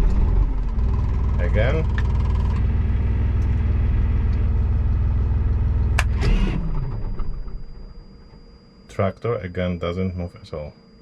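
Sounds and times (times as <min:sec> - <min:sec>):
tractor engine running: 0:00.0 - 0:07.9.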